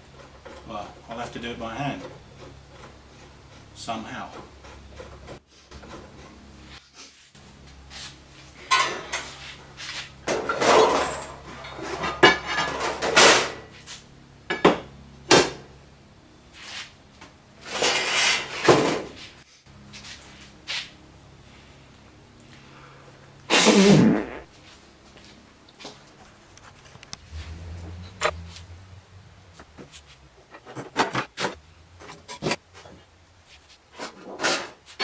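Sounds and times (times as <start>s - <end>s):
sheet metal clanking and scraping: 10.3s - 13.7s, 17.6s - 19.1s, 27.1s - 33.2s.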